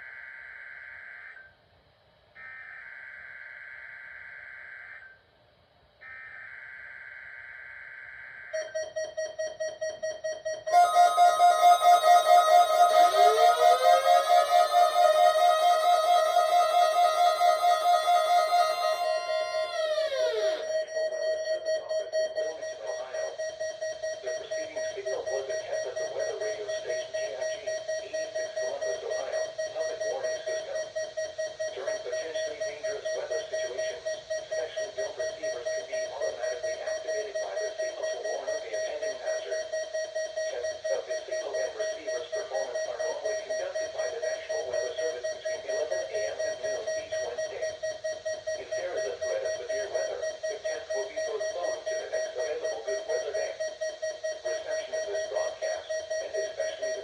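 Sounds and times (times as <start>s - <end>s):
alarm beeping rapidly: 10.8s - 20.7s
chord of tones sliding down: 10.8s - 20.7s.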